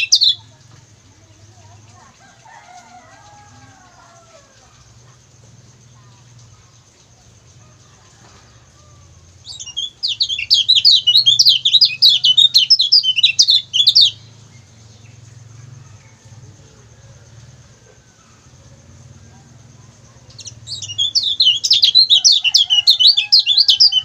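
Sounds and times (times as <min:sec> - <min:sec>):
bird chattering chirps: 0:00.0 - 0:00.4, 0:09.4 - 0:14.4, 0:20.2 - 0:24.0.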